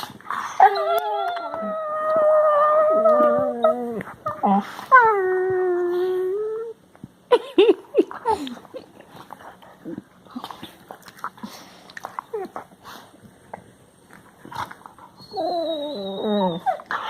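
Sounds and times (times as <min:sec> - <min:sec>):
puppy whining: 0:00.0 - 0:06.8, 0:15.0 - 0:17.0.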